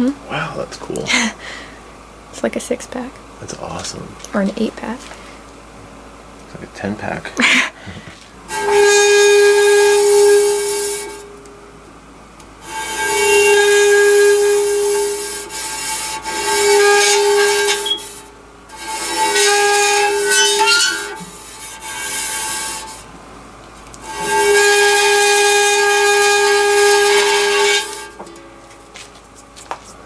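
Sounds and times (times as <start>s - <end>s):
bowed metal plate ringing: 27.0s - 28.9s.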